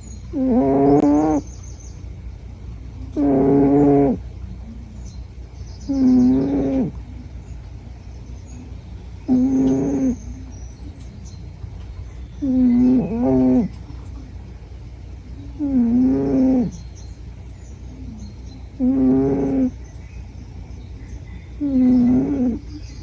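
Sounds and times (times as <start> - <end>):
cat snoring: 0.3 - 1.5, 3.1 - 4.2, 5.9 - 7.0, 9.3 - 10.3, 12.4 - 13.7, 15.6 - 16.8, 18.8 - 19.8, 21.6 - 22.8.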